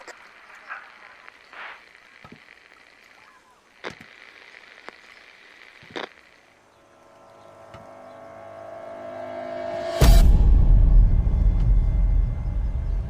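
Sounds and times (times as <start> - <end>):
low ominous suspense drone: 6.9 - 13.0.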